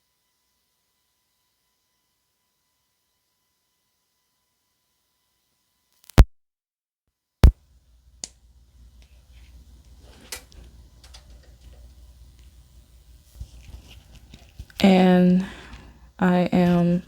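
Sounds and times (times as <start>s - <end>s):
loud electrical pops: 6.0s - 6.3s.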